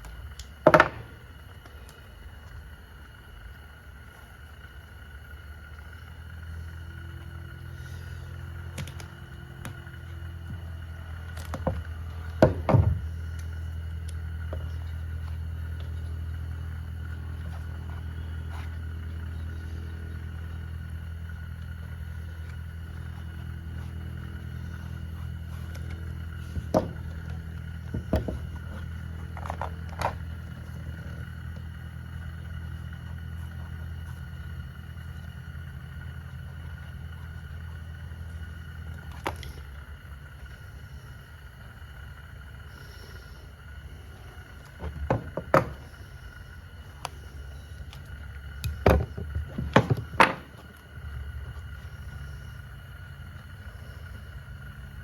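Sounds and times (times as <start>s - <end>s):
low mechanical hum with whine: 0.0s - 55.0s
sharp knocks and clicks: 44.8s - 45.8s, 48.6s - 50.6s.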